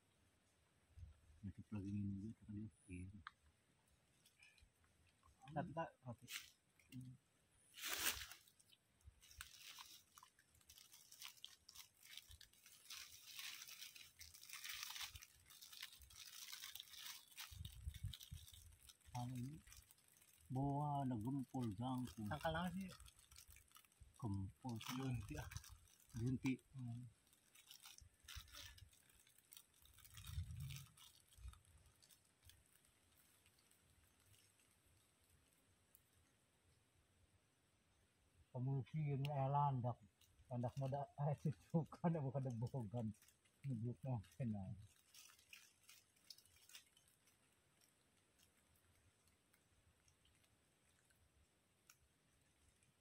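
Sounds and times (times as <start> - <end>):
dry leaves crunching: 7.7 - 20.6, 24.7 - 26.3, 27.2 - 34.9, 44.8 - 48.6.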